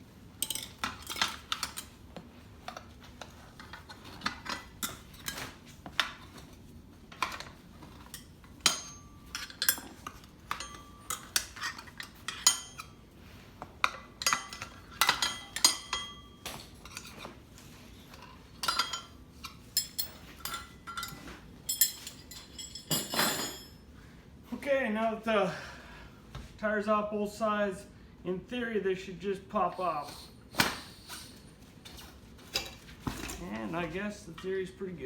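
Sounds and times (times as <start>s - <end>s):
tire spoons clinking on wheel rim: 8.0s - 12.9s.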